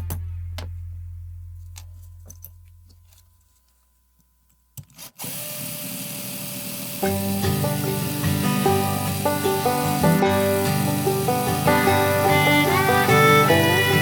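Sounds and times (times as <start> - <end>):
low hum: 0.0 - 4.2
power tool whirring: 5.0 - 14.0.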